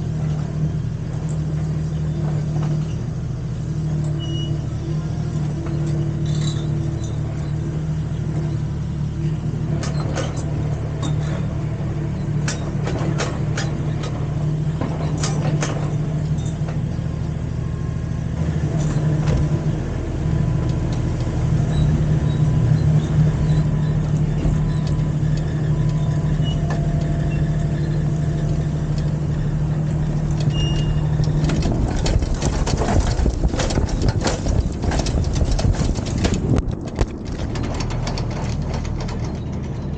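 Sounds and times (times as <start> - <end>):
mini excavator engine running: 0.0 - 39.9
metallic clanks and clicks: 20.6 - 39.9.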